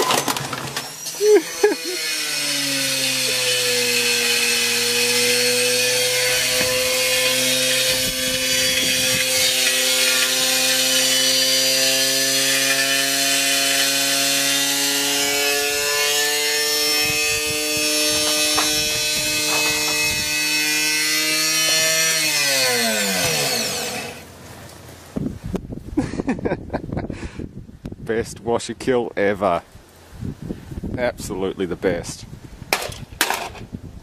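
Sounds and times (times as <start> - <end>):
harsh grinding and scraping: 0.0 - 24.3.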